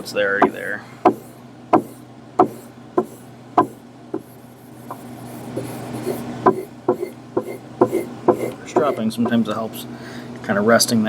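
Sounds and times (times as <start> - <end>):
axe rubbing on leather strop: 5.0 - 9.4.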